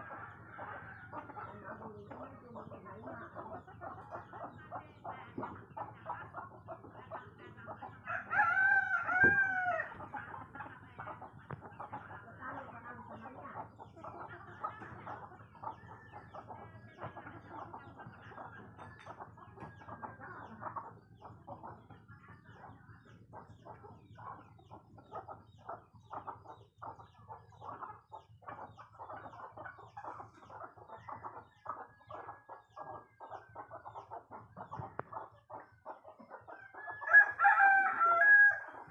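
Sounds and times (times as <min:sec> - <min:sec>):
hens clucking: 0:00.0 - 0:38.9
rooster crowing: 0:08.1 - 0:10.0, 0:36.8 - 0:38.9.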